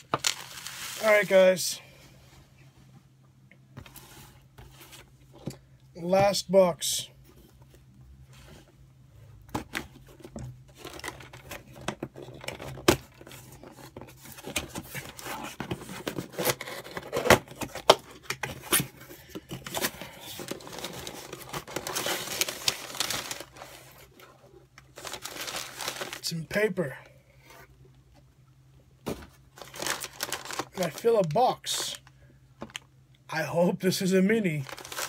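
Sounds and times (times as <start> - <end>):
cardboard tearing and crinkling: 0.0 - 1.3, 12.2 - 18.9, 19.6 - 24.0, 24.9 - 26.3, 29.6 - 31.2, 34.6 - 35.0.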